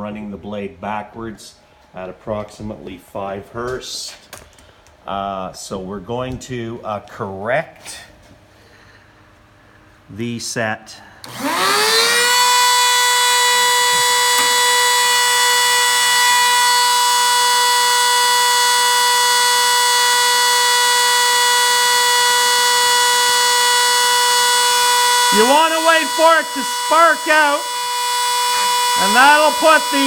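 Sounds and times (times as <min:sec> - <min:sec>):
band saw motor whine: 0:11.3 - 0:30.0.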